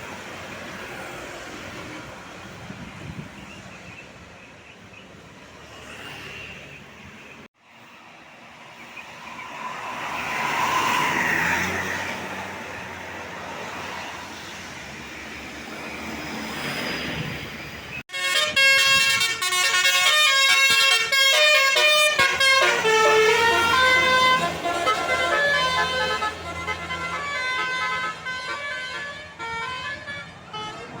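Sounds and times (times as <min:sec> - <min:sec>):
vehicle passing road noise: 0:00.0 - 0:31.0
bus horn playing a tune: 0:18.1 - 0:31.0.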